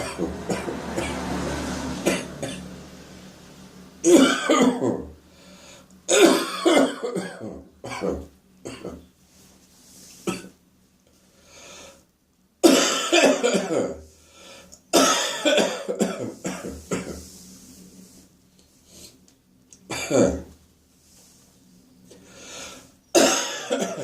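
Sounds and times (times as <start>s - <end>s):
person coughing wet coughs: 4.1s - 5.1s, 6.1s - 9.0s, 12.6s - 14.0s, 14.9s - 17.2s, 19.9s - 20.5s, 23.2s - 24.0s
throat clearing: 4.2s - 5.1s, 6.4s - 9.0s, 19.9s - 20.5s
person breathing: 5.2s - 6.0s, 11.2s - 12.0s, 14.1s - 14.8s, 22.2s - 23.0s.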